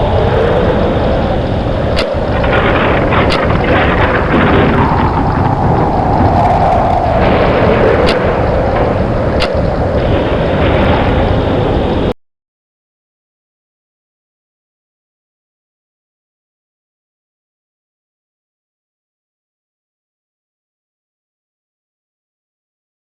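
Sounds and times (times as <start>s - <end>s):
rain hissing: 0.0s - 12.1s
sharp thunder cracks: 0.0s - 12.2s
thunder rumbling: 0.0s - 12.2s.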